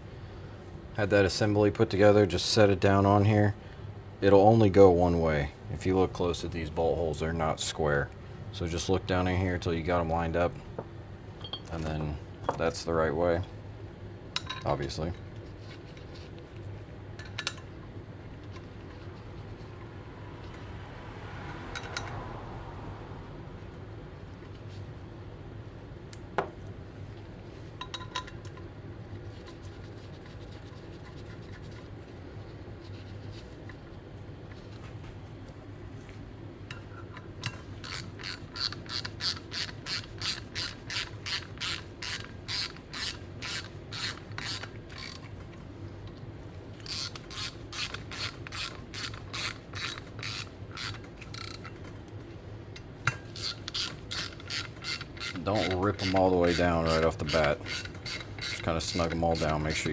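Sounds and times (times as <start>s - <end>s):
ratchet wrench clicking: 37.4s - 45.3s, 46.8s - 51.8s, 53.1s - 59.9s.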